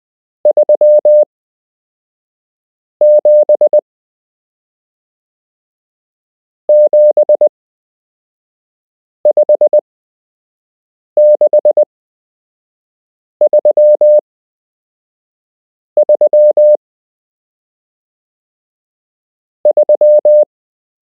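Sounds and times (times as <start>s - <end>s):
morse code beeps: 0.5s - 1.3s, 3.0s - 3.8s, 6.7s - 7.5s, 9.3s - 9.8s, 11.2s - 11.8s, 13.5s - 14.2s, 16.0s - 16.8s, 19.7s - 20.5s.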